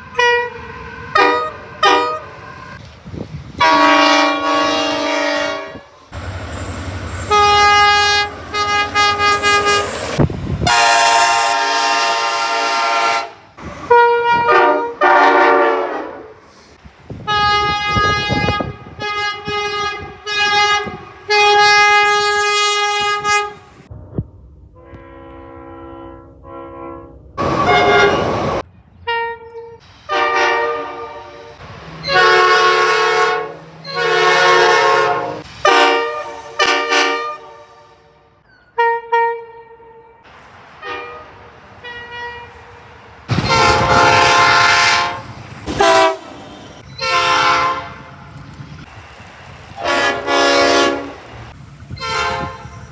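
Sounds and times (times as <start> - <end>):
train horn chord blasts: 0.1 - 2.4, 3.6 - 6.1, 7.3 - 10.0, 10.7 - 16.4, 24.8 - 40.2, 43.3 - 46.4, 47.0 - 48.1, 49.8 - 51.2, 52.0 - 52.8.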